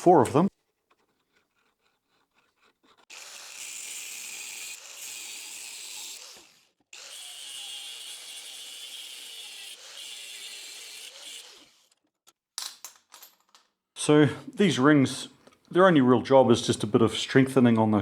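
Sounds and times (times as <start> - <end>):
shop tool cutting metal: 3.1 - 12.0.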